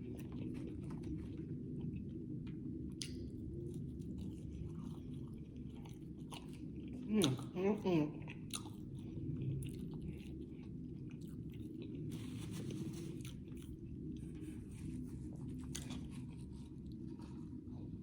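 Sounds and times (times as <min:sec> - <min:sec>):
person chewing crunchy food: 0:00.0 - 0:07.6, 0:08.2 - 0:18.0.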